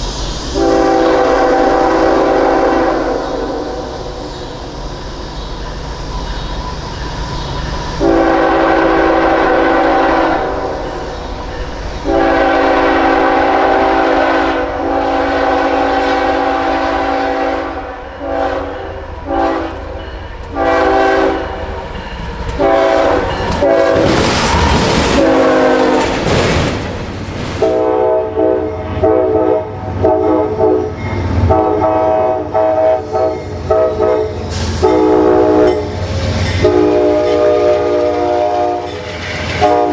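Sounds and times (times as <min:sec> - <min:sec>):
locomotive air horn blasts: 0:00.6 - 0:04.3, 0:08.0 - 0:11.0, 0:12.0 - 0:21.8, 0:22.6 - 0:24.2, 0:25.0 - 0:26.2, 0:27.6 - 0:36.0, 0:36.6 - 0:39.0, 0:39.6 - 0:39.9.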